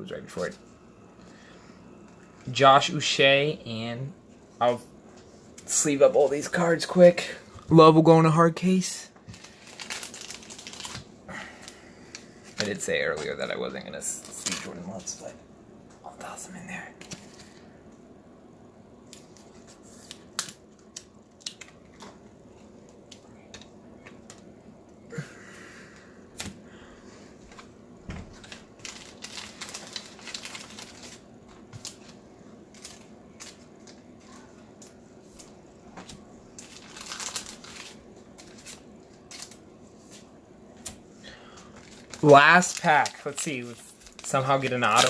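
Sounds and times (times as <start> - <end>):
thin plastic crinkling: 9.2 - 15.2, 28.3 - 40.2, 40.8 - 45.0.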